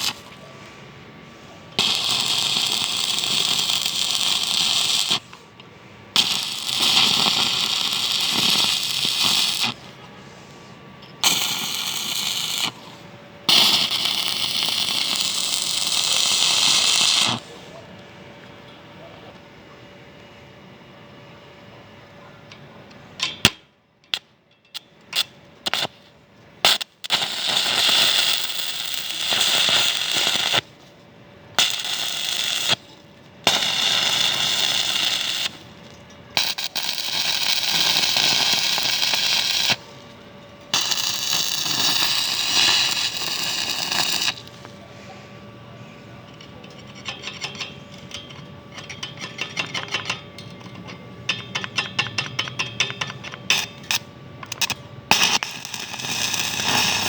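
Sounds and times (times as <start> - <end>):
welding arc crackling hiss: 0.0 - 0.3, 1.8 - 5.4, 6.2 - 10.0, 11.2 - 17.6, 25.2 - 30.9, 31.5 - 44.8, 51.3 - 57.0
welding arc strikes: 0.0 - 0.3, 1.8 - 5.4, 6.2 - 10.0, 11.2 - 17.5, 23.2 - 30.9, 31.5 - 44.8, 46.2 - 57.0.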